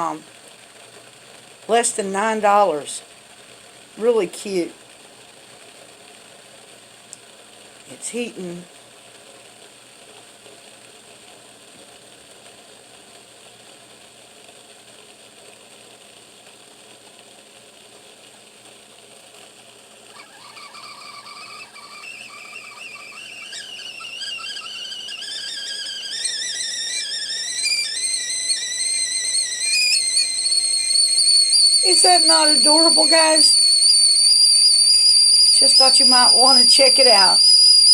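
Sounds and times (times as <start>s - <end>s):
water heating hiss: 0.0s - 37.9s
kettle whistling: 20.0s - 37.9s.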